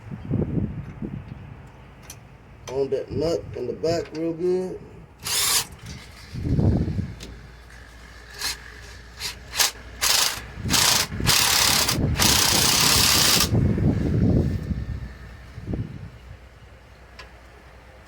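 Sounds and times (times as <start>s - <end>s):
ratchet wrench clicking: 5.2s - 7.3s, 8.3s - 13.6s.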